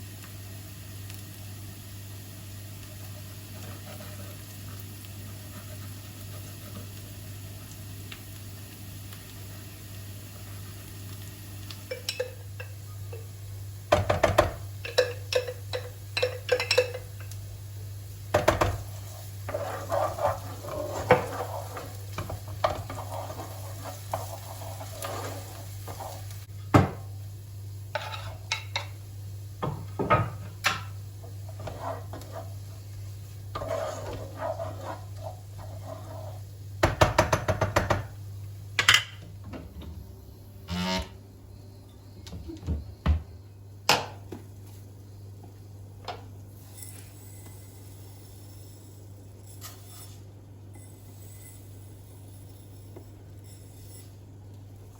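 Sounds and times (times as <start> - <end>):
dishes and utensils clinking: 11.9 - 13.3, 13.9 - 17.4
stirring: 18.7 - 26.3, 31.2 - 32.8, 33.5 - 36.5.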